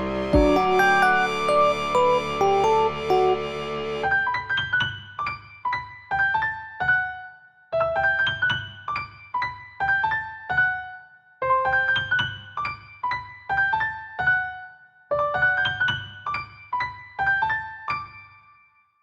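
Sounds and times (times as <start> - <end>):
phone ringtone melody: 0.0 - 4.0.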